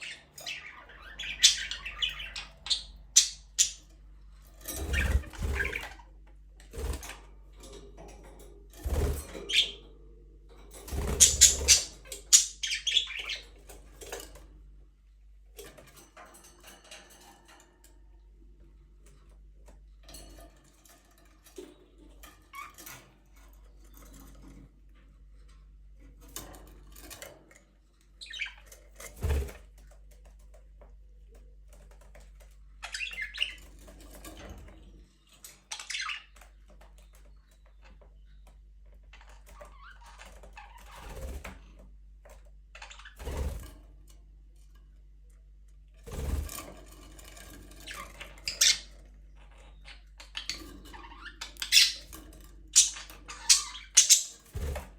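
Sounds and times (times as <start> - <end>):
budgerigars chirping: 0.0 - 3.8, 11.2 - 13.4, 49.8 - 52.1, 52.8 - 54.5.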